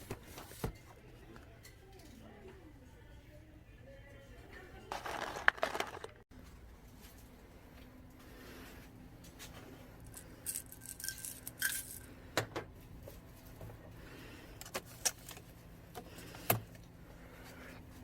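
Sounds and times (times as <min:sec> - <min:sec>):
hard objects clinking: 0:10.1 - 0:12.1.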